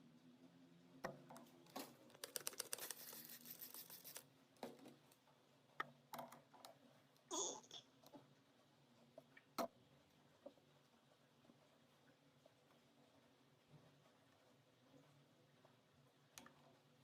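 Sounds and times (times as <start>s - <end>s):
rapid clicking and scraping: 1.2s - 5.2s.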